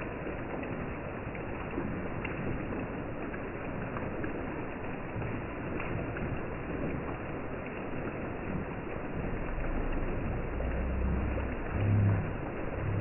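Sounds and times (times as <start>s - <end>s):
rain with wind: 0.0s - 13.0s
deep low rumble: 8.6s - 13.0s.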